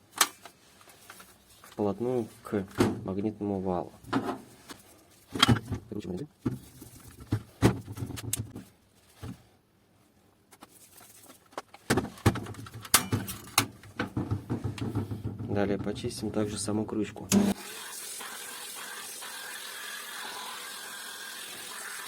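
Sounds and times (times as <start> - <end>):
plastic parts clicking and knocking: 5.3 - 9.4, 11.4 - 16.1.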